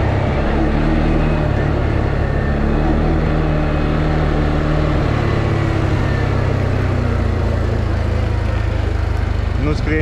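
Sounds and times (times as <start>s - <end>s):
atv engine running: 0.0s - 10.0s.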